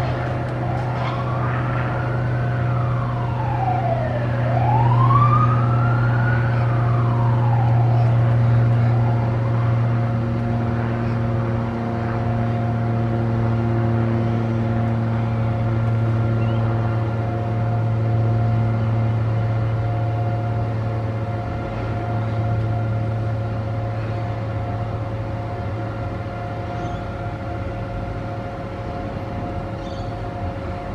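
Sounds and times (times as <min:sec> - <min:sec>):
low traffic drone: 0:00.0 - 0:30.9
siren wailing: 0:00.0 - 0:30.9.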